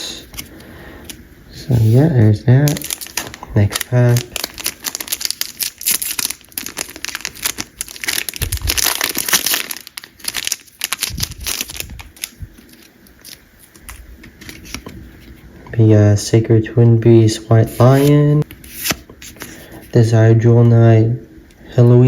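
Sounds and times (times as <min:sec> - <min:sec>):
wrapper crinkling: 0:02.5 - 0:15.0
cards rustling and clicking: 0:02.6 - 0:15.4.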